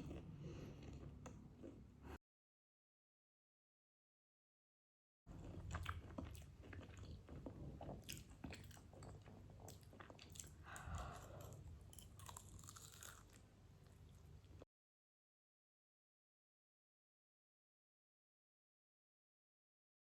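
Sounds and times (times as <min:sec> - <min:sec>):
chewing and crunching food: 0:00.0 - 0:02.1, 0:05.3 - 0:14.7.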